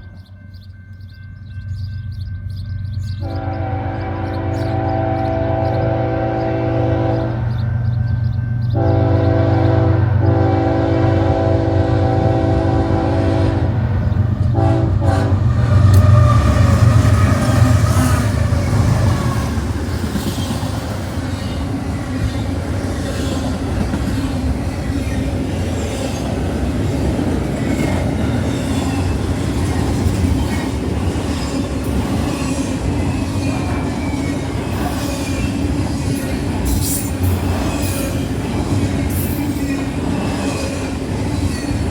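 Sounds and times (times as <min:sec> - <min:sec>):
train wheel noise and rail clatter: 0:00.0 - 0:41.9
locomotive heavy rumble: 0:02.1 - 0:41.9
locomotive air horn blasts: 0:03.2 - 0:07.6, 0:08.8 - 0:19.5.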